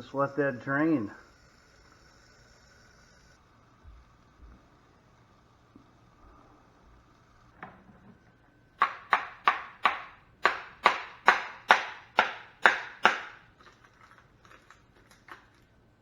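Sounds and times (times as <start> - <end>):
sharp knocks: 8.8 - 13.4.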